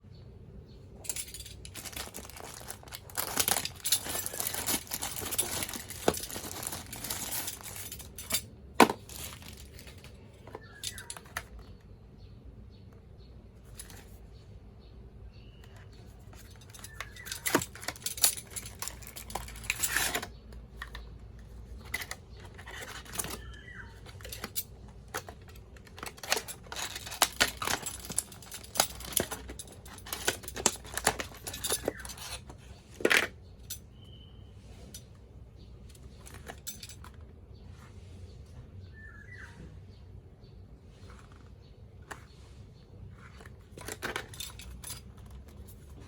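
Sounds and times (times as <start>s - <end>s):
packaging handling noises: 1.0s - 11.7s, 15.7s - 33.5s, 41.0s - 46.0s.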